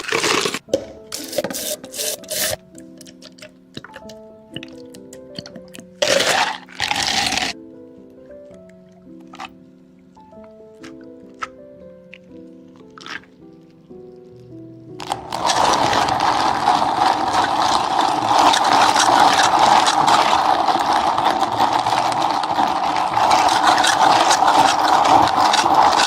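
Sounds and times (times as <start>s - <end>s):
drink appliance motor rattling: 15.1s - 26.0s.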